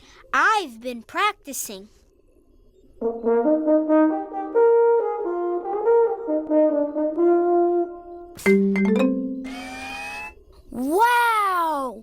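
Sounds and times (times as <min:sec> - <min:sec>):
brass instrument playing a tune: 0:03.0 - 0:08.2.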